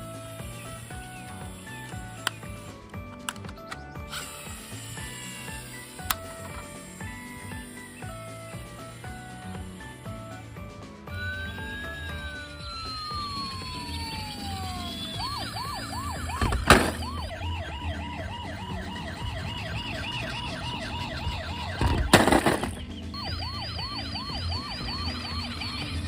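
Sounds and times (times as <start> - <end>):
electronic toy siren wailing: 0.0 - 2.8, 4.1 - 26.0
loud bangs: 21.8 - 23.0.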